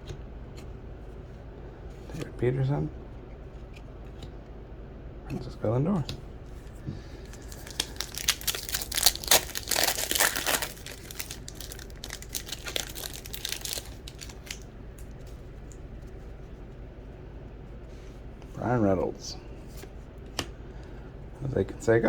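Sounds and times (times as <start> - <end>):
plastic wrapper tearing and crinkling: 7.2 - 14.7.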